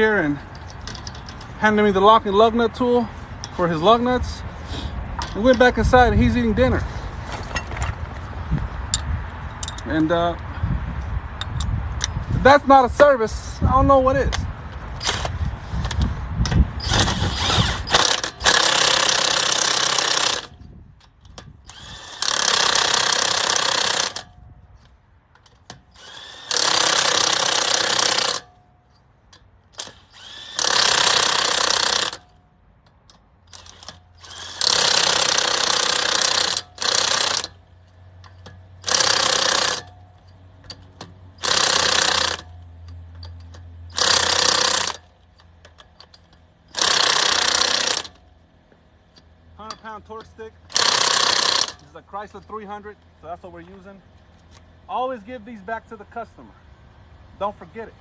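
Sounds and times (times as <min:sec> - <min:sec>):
impact wrench hammering: 0:38.2 - 0:48.2, 0:49.1 - 0:52.5.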